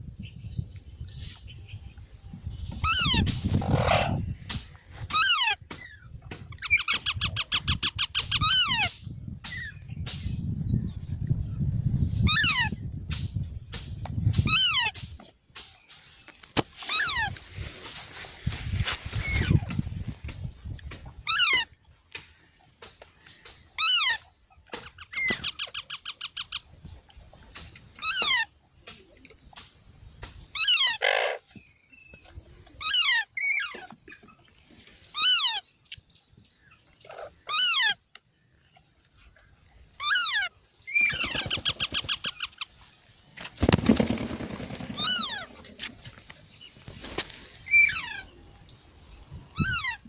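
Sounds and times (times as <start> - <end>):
parrot screeching: 2.8 - 4.2
parrots raspy chattering: 2.8 - 4.3.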